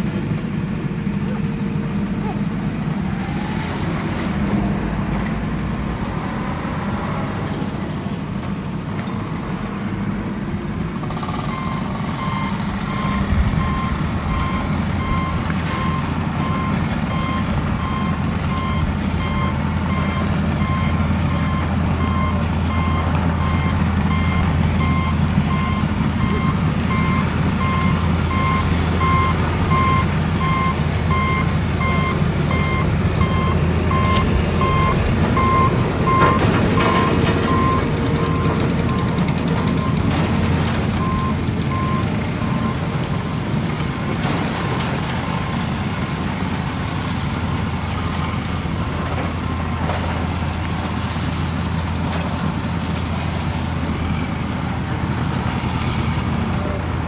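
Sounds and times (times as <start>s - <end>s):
truck engine rumbling: 0.0s - 57.0s
reversing alarm beeping: 11.1s - 43.0s.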